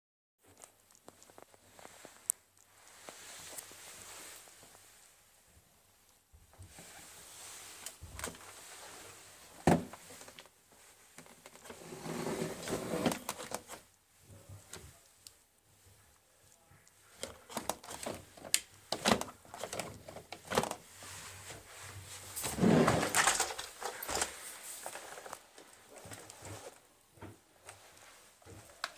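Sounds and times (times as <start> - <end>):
rustling: 0.4 - 28.9
plastic parts clicking and knocking: 13.0 - 13.8, 17.2 - 20.8.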